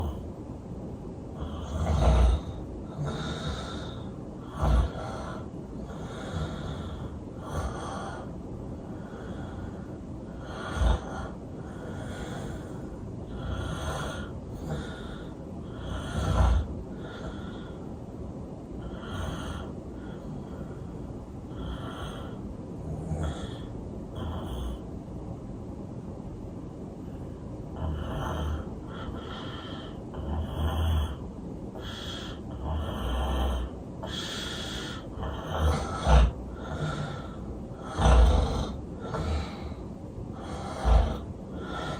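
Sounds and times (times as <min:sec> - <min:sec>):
sharp snorts: 0:01.4 - 0:05.4, 0:15.8 - 0:16.7, 0:31.8 - 0:39.8, 0:40.4 - 0:41.9
person snoring: 0:01.4 - 0:08.3, 0:09.1 - 0:17.8, 0:21.5 - 0:24.8, 0:27.8 - 0:31.2, 0:31.8 - 0:41.9.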